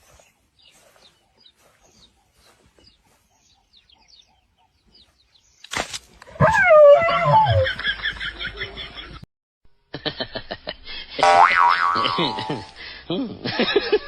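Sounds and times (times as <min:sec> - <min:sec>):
squawking cry falling in pitch: 0:06.3 - 0:07.7.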